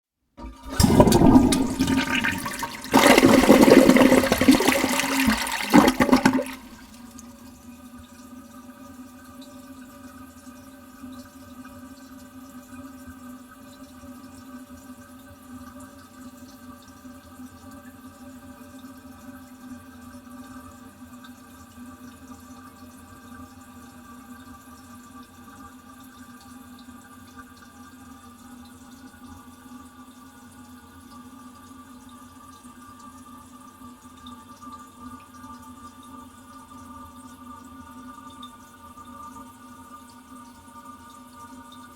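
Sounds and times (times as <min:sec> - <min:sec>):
toilet flushing: 0:00.4 - 0:07.5.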